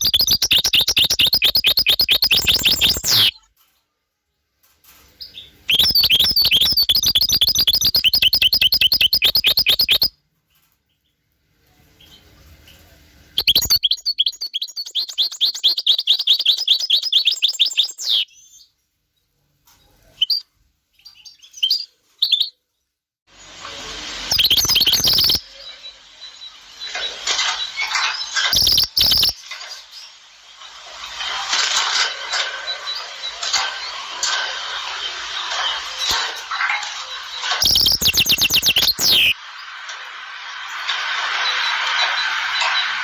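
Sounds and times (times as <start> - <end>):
songbirds chirping: 0.0 - 3.4, 5.2 - 11.2, 11.9 - 18.8, 24.3 - 36.2, 37.0 - 39.4.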